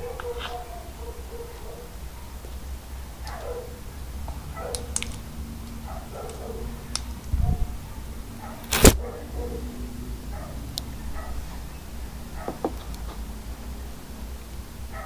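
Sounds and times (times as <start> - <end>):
loud sharp pop: 8.6 - 9.0
slime clicks and pops: 8.7 - 9.0.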